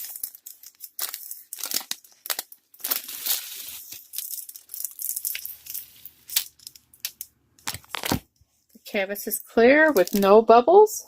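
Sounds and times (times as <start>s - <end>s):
plastic film crinkling: 0.0s - 8.3s, 9.8s - 10.4s.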